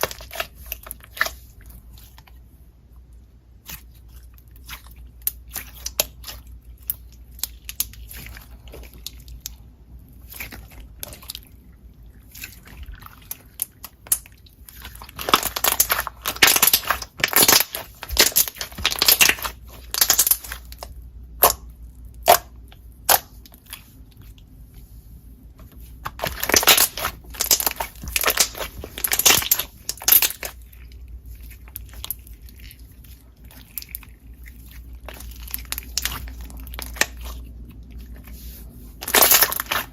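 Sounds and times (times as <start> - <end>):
slime squished by hand: 3.5 - 24.5, 25.7 - 39.9
dense crunchy crackling: 26.0 - 37.4, 38.9 - 39.9.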